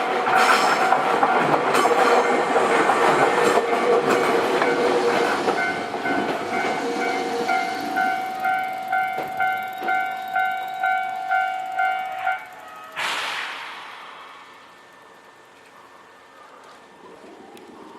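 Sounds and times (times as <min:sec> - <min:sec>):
electric train rumbling past: 0:00.0 - 0:17.9
level crossing warning bell dinging: 0:03.7 - 0:13.0
short rush of noise: 0:13.0 - 0:15.4.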